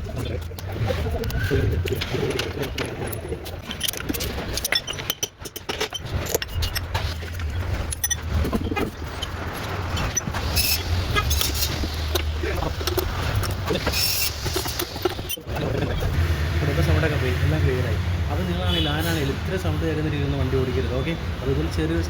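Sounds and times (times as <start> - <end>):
car engine and tyre hum: 6.6 - 22.0.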